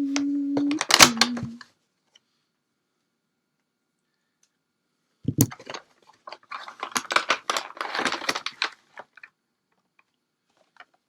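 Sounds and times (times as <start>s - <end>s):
packaging crinkling and rustling: 5.4s - 11.0s.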